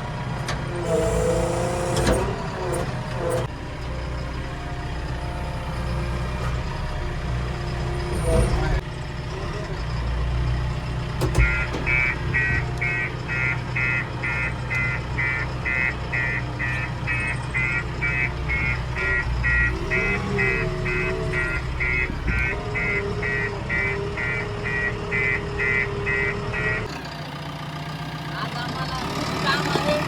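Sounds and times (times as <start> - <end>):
diesel engine running: 0.0 - 30.0
reversing alarm beeping: 11.3 - 26.9.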